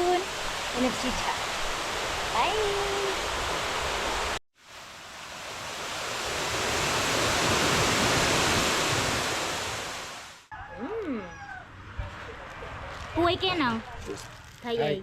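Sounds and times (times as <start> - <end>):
waterfall roaring: 0.0 - 4.4.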